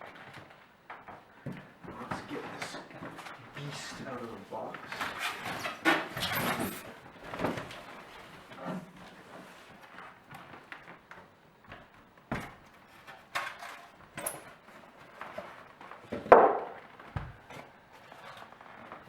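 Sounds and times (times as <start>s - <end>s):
cardboard knocks and rustles: 15.4s - 17.8s.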